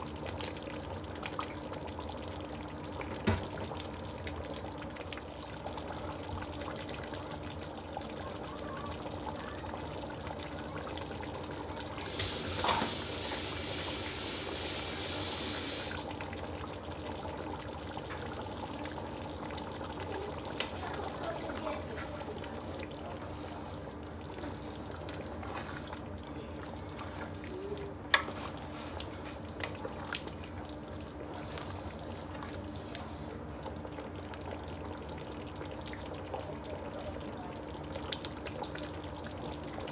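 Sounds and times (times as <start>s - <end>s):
water running: 6.2s - 23.9s.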